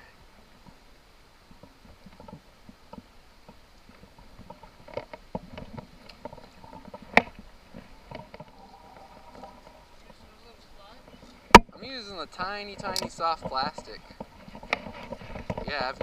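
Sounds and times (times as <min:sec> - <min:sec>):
clicks and knocks of handling gear: 0:12.8 - 0:16.0.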